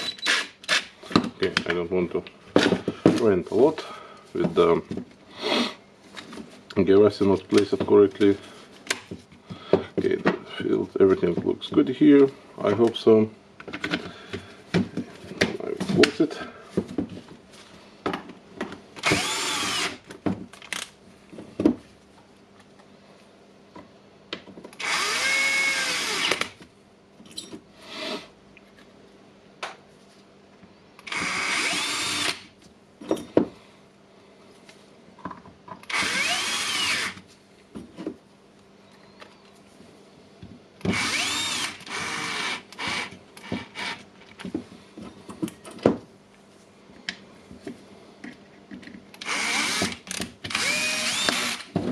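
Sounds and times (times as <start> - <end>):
power screwdriver whining: 19.0 - 20.0, 24.8 - 26.5, 31.0 - 32.5, 35.8 - 37.2, 40.9 - 44.0, 49.2 - 51.7.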